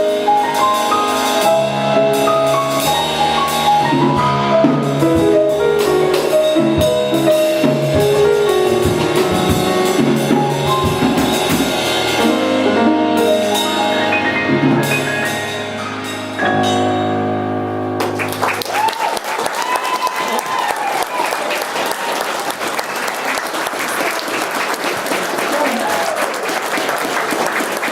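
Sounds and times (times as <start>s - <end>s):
instrumental ensemble with drum kit: 0.0s - 17.2s.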